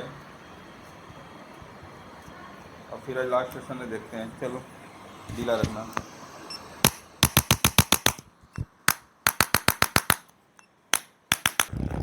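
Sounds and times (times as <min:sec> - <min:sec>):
sharp clicks: 0:06.8 - 0:11.8.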